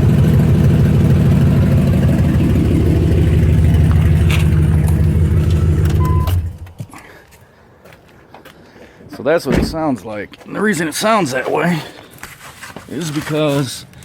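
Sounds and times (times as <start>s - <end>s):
pulsing exhaust leak: 0.0s - 6.6s
pickup engine idling: 0.0s - 6.8s.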